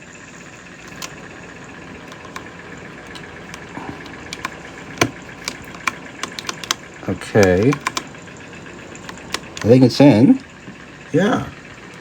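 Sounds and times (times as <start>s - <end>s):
steady background hum: 0.0s - 12.0s
plastic keycap clicks: 0.8s - 1.2s, 2.0s - 8.1s, 9.0s - 9.7s.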